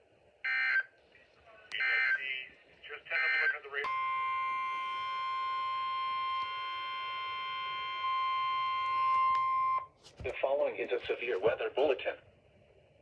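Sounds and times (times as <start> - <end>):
steady high alarm tone: 0.5 - 0.9, 3.1 - 9.9.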